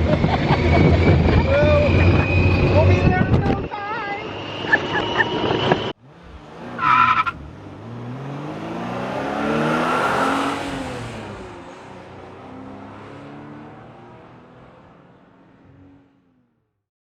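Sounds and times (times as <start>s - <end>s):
car engine revving hard: 6.0s - 16.1s.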